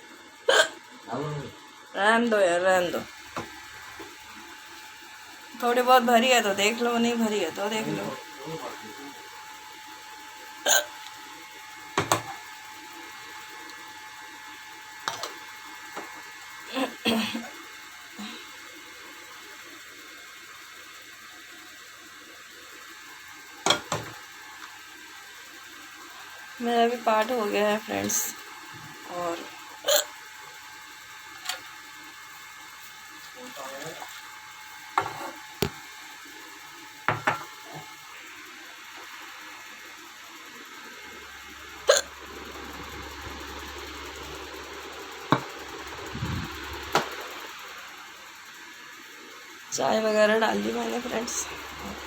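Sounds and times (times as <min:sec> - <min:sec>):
woman hiccuping: 0:00.5 - 0:00.8, 0:10.7 - 0:11.0, 0:29.8 - 0:30.2, 0:41.9 - 0:42.1
low steady hum: 0:40.5 - 0:47.9.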